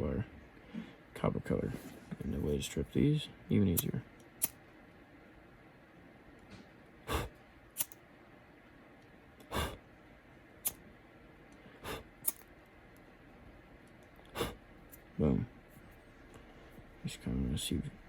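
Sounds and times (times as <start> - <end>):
lighter being flicked: 3.7 - 4.6, 7.8 - 8.0, 12.2 - 12.5.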